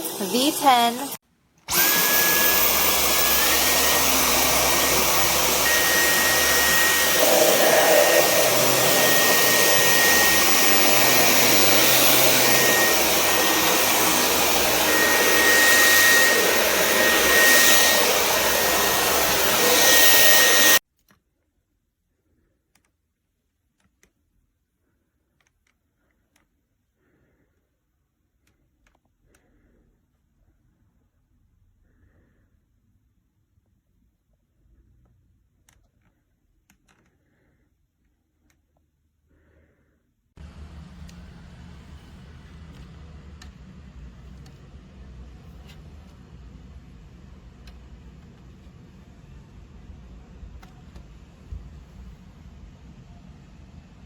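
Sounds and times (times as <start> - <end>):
vacuum cleaner motor whine: 0.0 - 20.8, 40.4 - 54.0.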